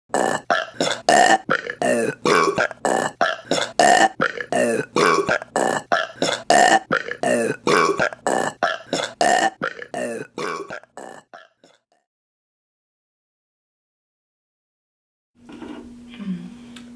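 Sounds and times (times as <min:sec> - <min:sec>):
women burping: 0:00.1 - 0:11.5.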